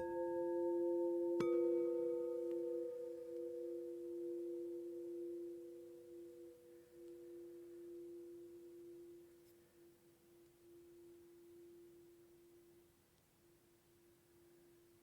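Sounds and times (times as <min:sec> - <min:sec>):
singing bowls ringing: 0:00.0 - 0:09.3.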